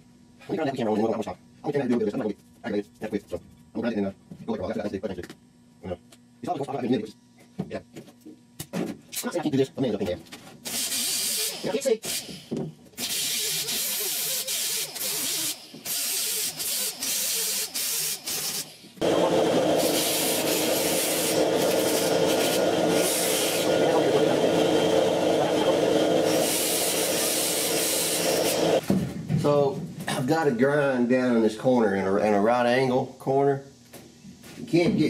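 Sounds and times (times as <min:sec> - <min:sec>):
welding arc crackling: 0:13.0 - 0:28.8.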